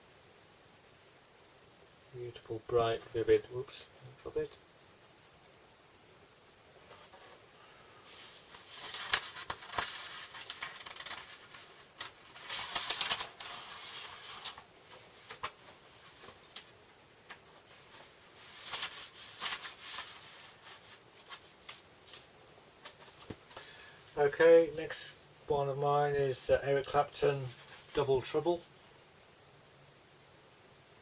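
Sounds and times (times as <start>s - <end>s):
paper rustling and sliding: 6.8s - 23.7s, 27.2s - 28.2s.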